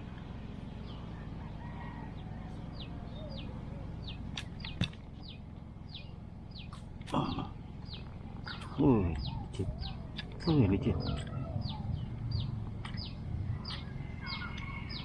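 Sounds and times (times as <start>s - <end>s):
birds chirping: 0.0s - 15.0s.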